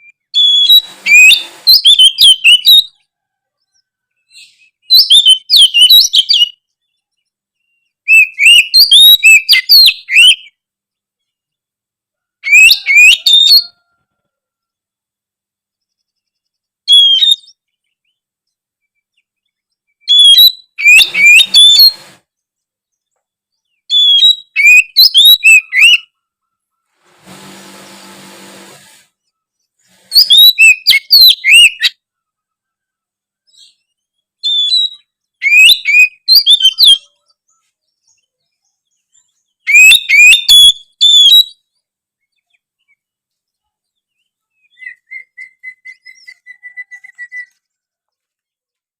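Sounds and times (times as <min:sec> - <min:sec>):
magpie-robin singing: 0:00.0 - 0:03.0, 0:03.6 - 0:10.6, 0:12.4 - 0:13.8, 0:15.8 - 0:18.2, 0:18.9 - 0:22.2, 0:22.9 - 0:26.2, 0:29.2 - 0:32.0, 0:33.4 - 0:43.0, 0:43.9 - 0:47.6.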